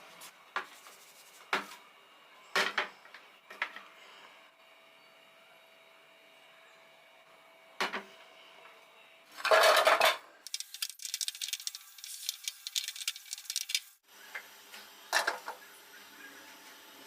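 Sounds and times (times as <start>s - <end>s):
pots and utensils clattering: 9.4s - 10.2s.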